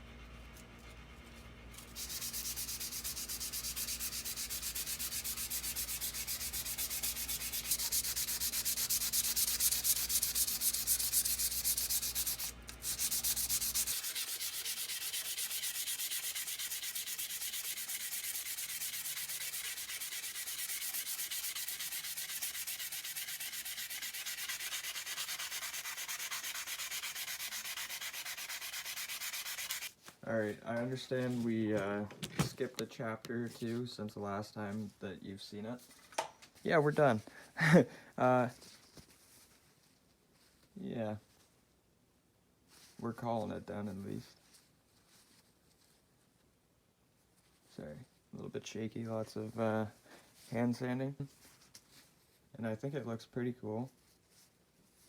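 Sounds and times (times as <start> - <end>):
sanding rasping on metal: 1.8 - 29.9.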